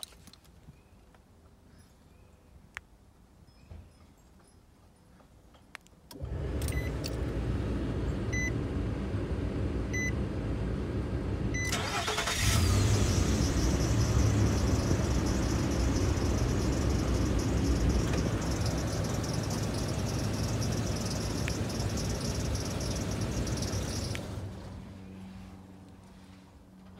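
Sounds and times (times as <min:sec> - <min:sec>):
ignition hum: 0:06.1 - 0:24.9
car engine idling: 0:06.4 - 0:25.1
car starter cranking: 0:11.6 - 0:24.6.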